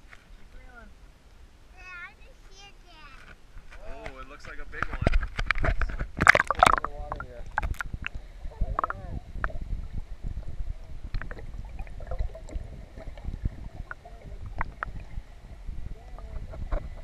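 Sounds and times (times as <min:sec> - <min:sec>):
wind rumble on microphone: 0:03.9 - 0:17.0.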